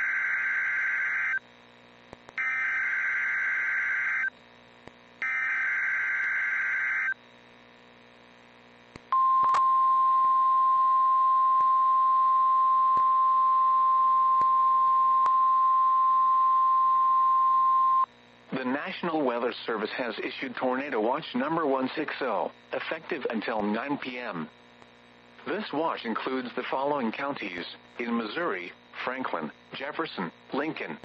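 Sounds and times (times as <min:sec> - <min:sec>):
steady alarm tone: 0:00.0 - 0:01.4, 0:02.4 - 0:04.3, 0:05.2 - 0:07.2.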